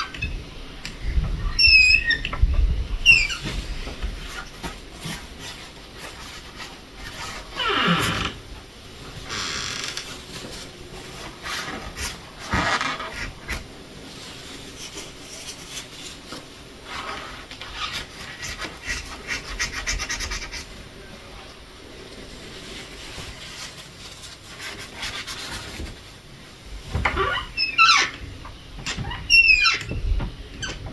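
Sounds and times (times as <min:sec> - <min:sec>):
paper towels rubbing and crinkling: 0:03.1 - 0:21.0, 0:21.8 - 0:28.4.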